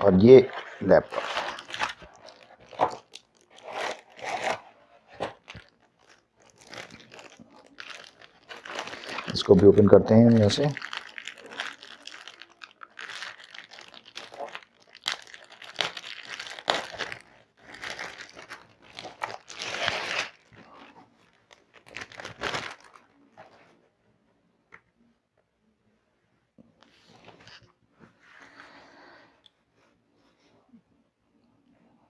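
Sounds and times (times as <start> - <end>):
plastic packaging crinkling and tearing: 0.0 - 23.6.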